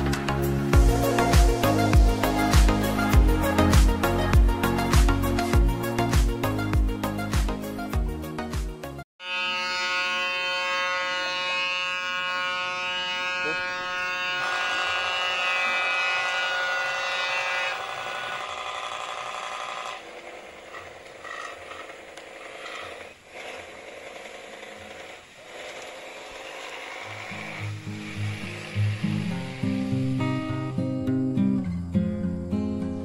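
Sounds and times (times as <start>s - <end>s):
toy steam boat engine buzzing: 9.2s - 30.7s.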